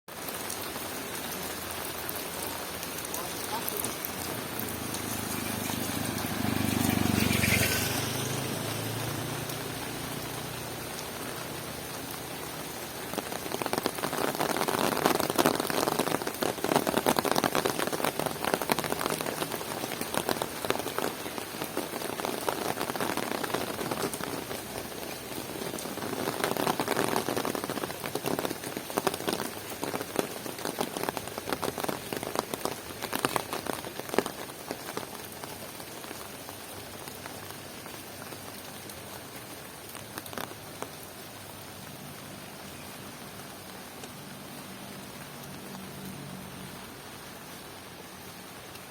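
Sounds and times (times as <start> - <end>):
rain falling steadily: 0.1 - 48.9.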